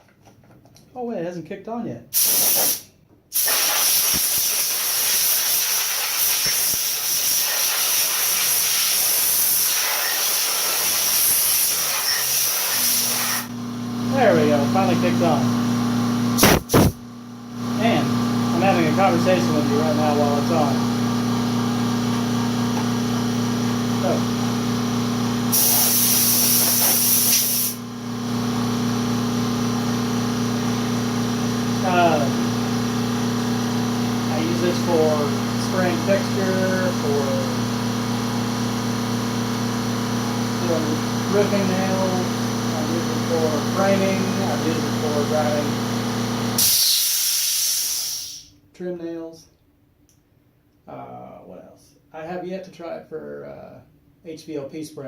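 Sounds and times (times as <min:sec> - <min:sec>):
air compressor humming: 0:02.1 - 0:48.6
air blow gun hissing: 0:02.2 - 0:13.5, 0:16.4 - 0:17.0, 0:25.5 - 0:27.8, 0:46.6 - 0:48.5.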